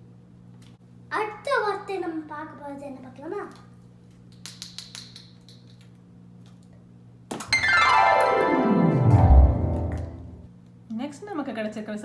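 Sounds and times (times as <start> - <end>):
keyboard effect sliding down in pitch: 7.5 - 10.4.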